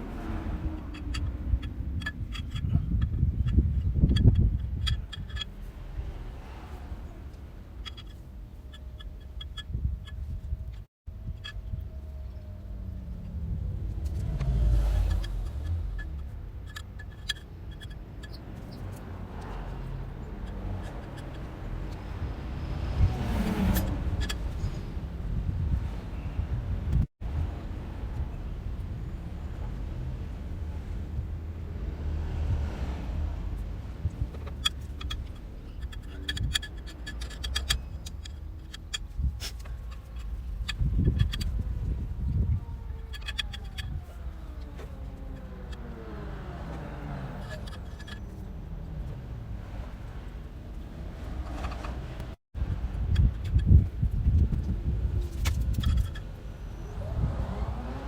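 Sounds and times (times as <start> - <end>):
low vehicle rumble: 0.0 - 58.0
metallic clicks of hand tools: 34.3 - 41.6.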